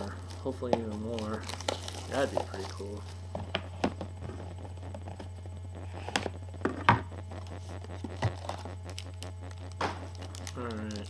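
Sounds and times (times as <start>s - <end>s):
steady low hum: 0.0s - 11.0s
cards clicking and rustling: 0.3s - 3.1s.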